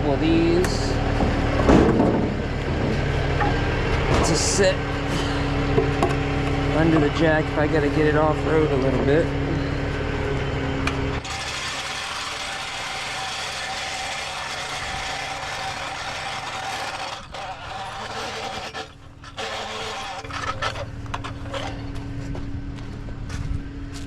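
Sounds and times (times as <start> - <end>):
truck engine idling: 0.0 - 24.0
knocks and clatter: 1.1 - 4.5.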